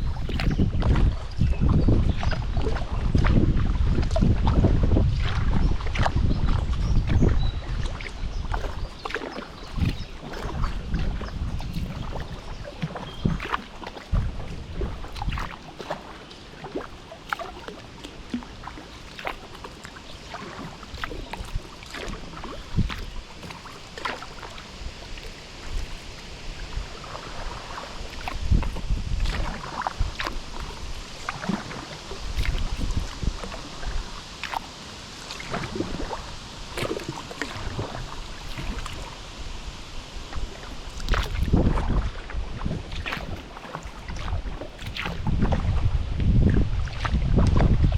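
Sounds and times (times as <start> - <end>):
wind buffeting microphone: 0.0 - 34.7, 35.3 - 47.9
paddle splashes and drips: 0.0 - 47.9
running water hiss: 8.6 - 45.4.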